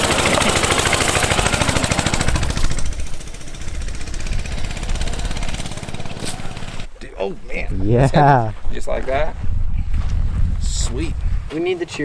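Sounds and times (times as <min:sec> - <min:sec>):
engine running with rapid chatter: 0:00.0 - 0:06.9.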